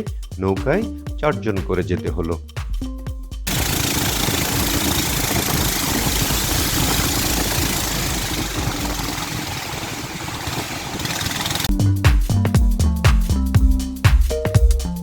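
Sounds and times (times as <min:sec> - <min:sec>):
boat engine rumbling: 0:03.5 - 0:11.7.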